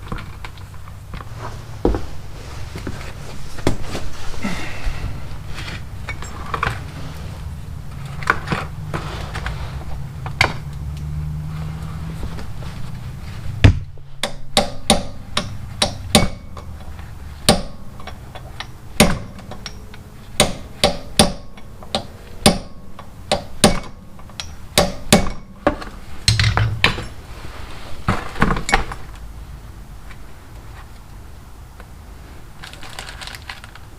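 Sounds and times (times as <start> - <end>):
hammer tapping metal: 14.2 - 16.8, 17.5 - 25.7.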